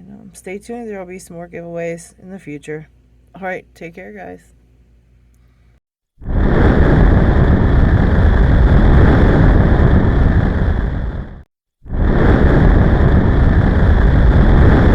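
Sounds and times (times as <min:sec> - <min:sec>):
loud steady rushing noise: 0:12.0 - 0:14.9.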